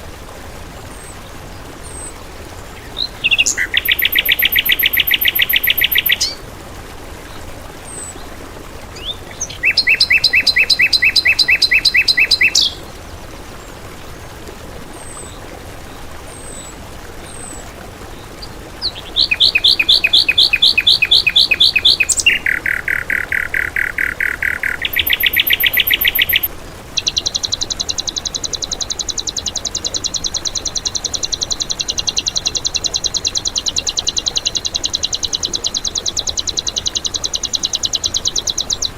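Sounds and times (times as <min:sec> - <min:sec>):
songbird singing rapid notes: 0:02.8 - 0:06.4, 0:09.0 - 0:12.8, 0:18.4 - 0:38.9
faint bird chirps: 0:03.0 - 0:06.4, 0:09.0 - 0:12.8, 0:18.8 - 0:38.9
bird trill: 0:03.2 - 0:06.4, 0:09.5 - 0:12.8, 0:19.0 - 0:38.9.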